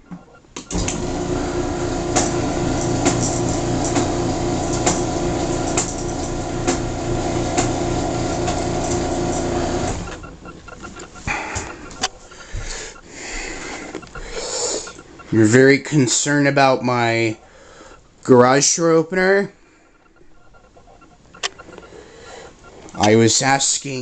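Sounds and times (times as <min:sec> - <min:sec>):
garage door opener motor hum: 0:00.6 - 0:10.7
regular clicks: 0:02.1 - 0:16.3, 0:17.4 - 0:23.9.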